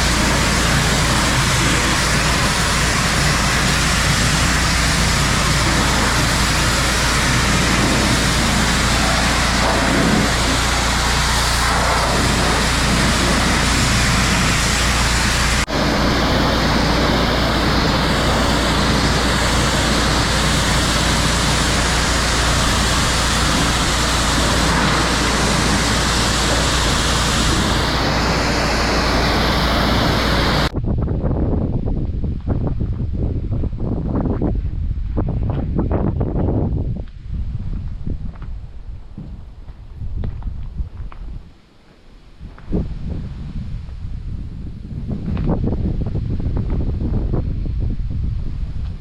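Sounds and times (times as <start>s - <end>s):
pressure washer water spray hiss: 0.0s - 30.7s
washer engine hum: 0.0s - 30.8s.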